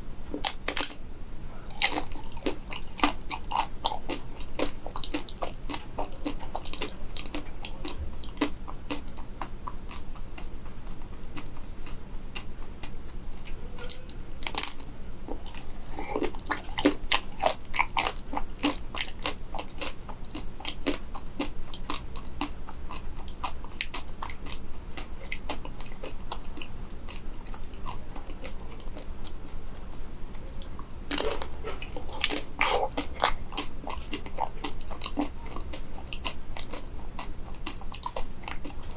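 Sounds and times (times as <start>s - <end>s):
chocolate shell crunching: 0.4s - 1.0s, 1.7s - 29.4s, 30.3s - 38.9s.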